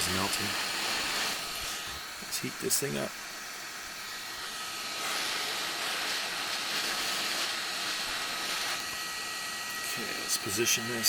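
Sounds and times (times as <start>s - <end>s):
hot air rushing: 0.0s - 2.8s, 4.4s - 8.9s.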